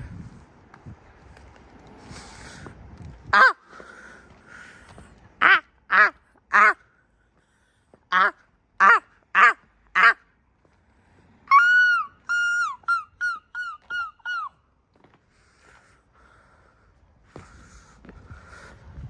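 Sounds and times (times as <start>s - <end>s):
gull calling: 3.3s - 3.6s, 11.5s - 14.6s.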